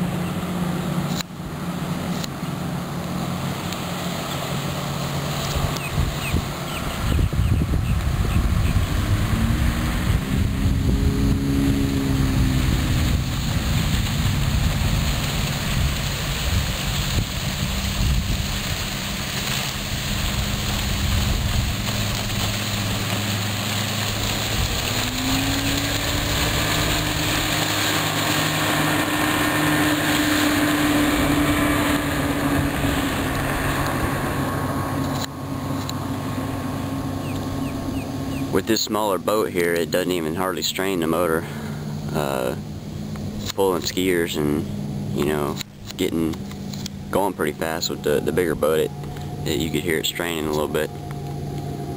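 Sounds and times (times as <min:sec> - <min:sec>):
outboard motor running: 0:00.0 - 0:51.9
wind buffeting microphone: 0:05.5 - 0:38.5.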